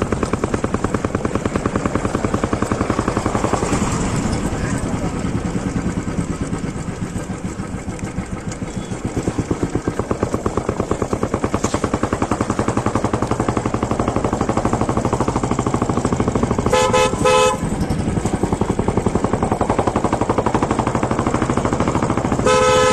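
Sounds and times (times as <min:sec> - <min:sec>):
motorcycle engine thumping: 0:00.0 - 0:22.9
horn sounding: 0:16.6 - 0:17.8, 0:22.4 - 0:22.9.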